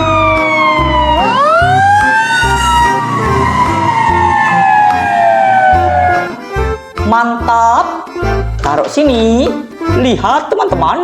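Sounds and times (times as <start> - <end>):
fire engine siren wailing: 0.0 - 6.6
pulsing low rumble: 1.0 - 6.3.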